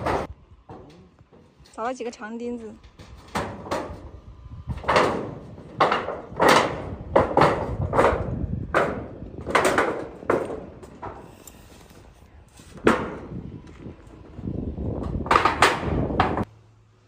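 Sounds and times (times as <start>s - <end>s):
hammer striking nails: 4.8s - 11.2s.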